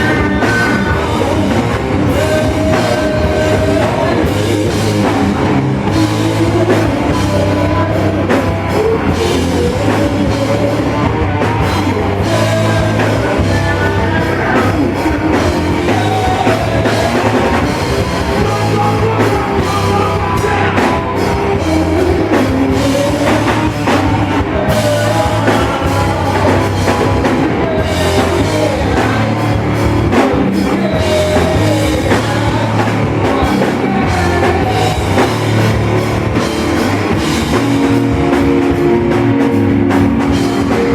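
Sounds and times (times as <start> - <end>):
drum kit: 0.0 - 40.9
heavy bass line: 0.0 - 40.9
loud rock band music: 0.0 - 40.9.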